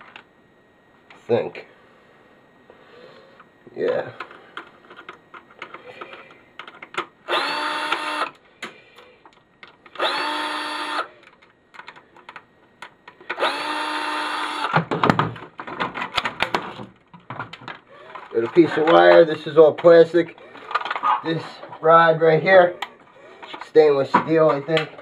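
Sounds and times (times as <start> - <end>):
plastic parts clicking and knocking: 4.2 - 7.2, 11.2 - 13.5, 14.6 - 20.0, 20.6 - 21.2
power drill whirring: 7.3 - 8.4, 9.9 - 11.2, 13.3 - 14.8.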